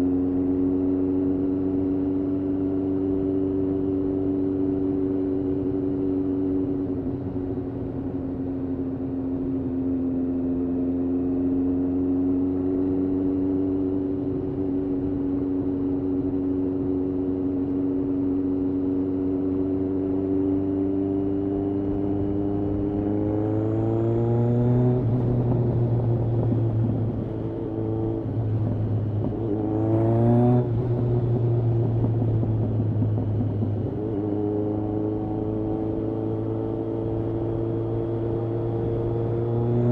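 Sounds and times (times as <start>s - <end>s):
motorcycle engine revving: 18.6s - 39.9s.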